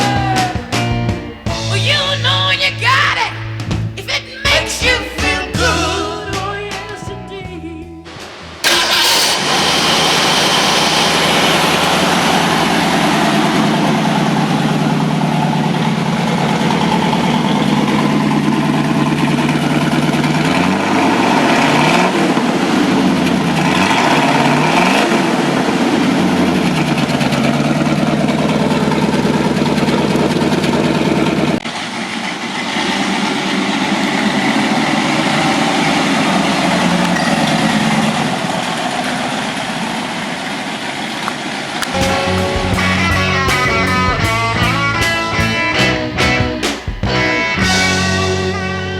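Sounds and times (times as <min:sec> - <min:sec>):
music: 0:00.0 - 0:08.6, 0:42.0 - 0:48.9
car engine starting and revving: 0:08.0 - 0:48.9.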